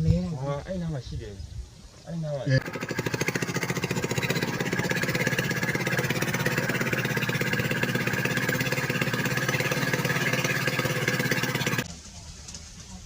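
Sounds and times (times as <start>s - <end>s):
small engine running: 2.6s - 11.9s.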